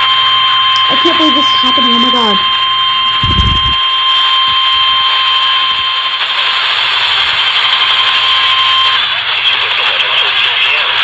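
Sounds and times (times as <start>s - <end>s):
steady high alert tone: 3.2s - 3.8s
radio hiss: 9.2s - 11.0s.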